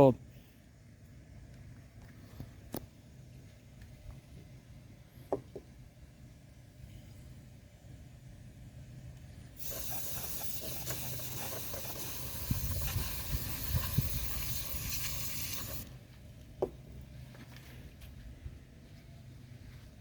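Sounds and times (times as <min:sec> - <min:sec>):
compressed air can hissing: 0:09.6 - 0:15.9.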